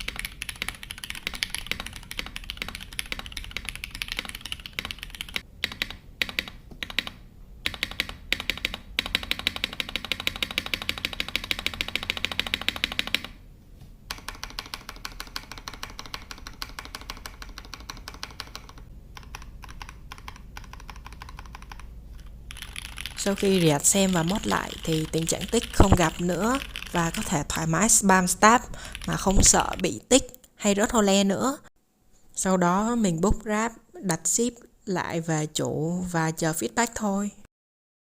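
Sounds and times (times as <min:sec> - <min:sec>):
typing on mechanical keyboard: 0:00.0 - 0:13.4, 0:14.1 - 0:27.5, 0:28.7 - 0:29.8.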